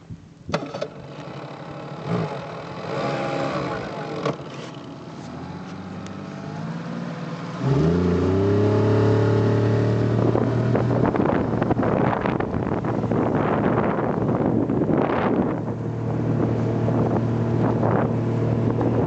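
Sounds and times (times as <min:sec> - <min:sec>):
outboard motor running: 0:00.6 - 0:05.3, 0:07.6 - 0:19.0
wind noise: 0:07.7 - 0:19.0.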